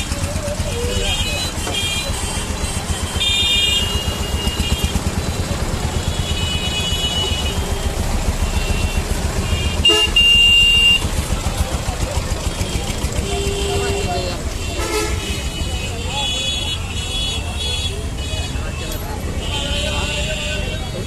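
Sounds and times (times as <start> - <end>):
street traffic rumble: 0.0 - 21.0
car horn toots: 6.0 - 11.2, 12.6 - 20.8.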